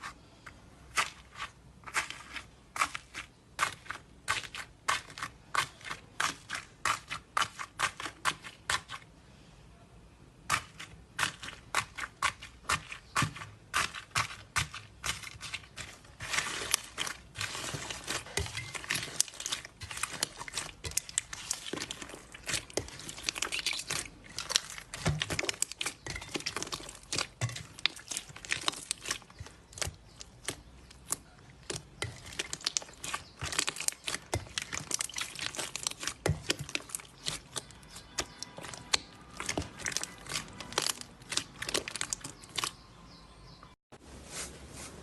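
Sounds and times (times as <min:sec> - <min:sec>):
slime crackling and popping: 0:11.8 - 0:42.7.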